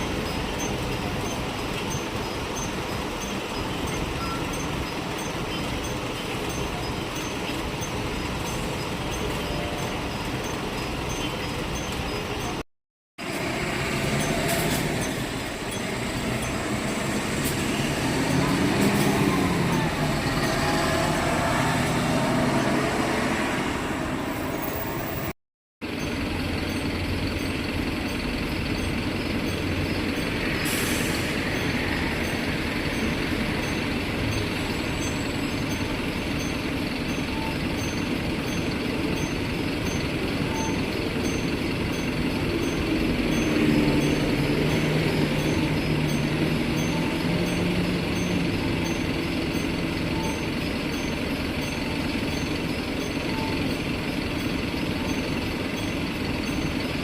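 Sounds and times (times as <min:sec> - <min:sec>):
bus engine: 0:00.0 - 0:57.0
road noise: 0:00.0 - 0:57.0
indicator chime: 0:31.6 - 0:56.8.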